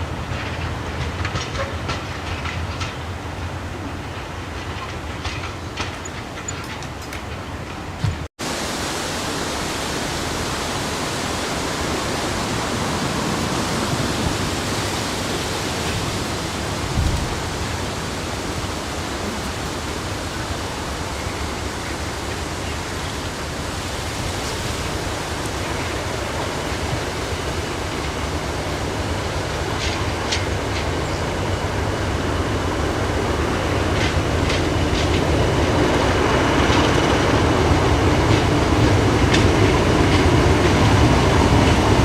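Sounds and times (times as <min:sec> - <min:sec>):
heavy rain hissing: 0:08.4 - 0:42.0.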